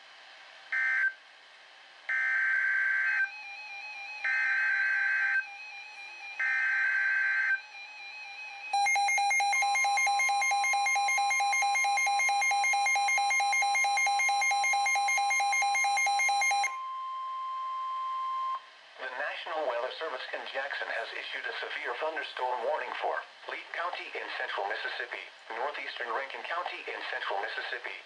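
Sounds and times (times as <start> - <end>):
steady warning tone: 2.8 - 18.7
rapid pulsing alarm beep: 6.3 - 18.6.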